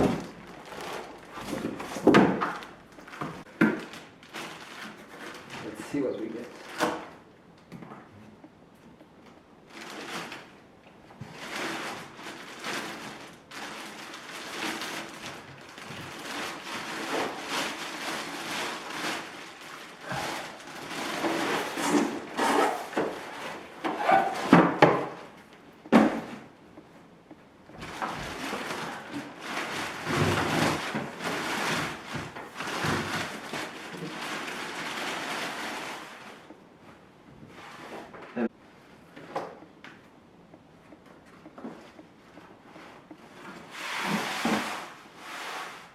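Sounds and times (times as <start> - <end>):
packaging scraping and rustling: 0.0 - 7.2, 9.7 - 10.6, 11.2 - 25.4, 27.8 - 36.6, 41.8 - 45.9.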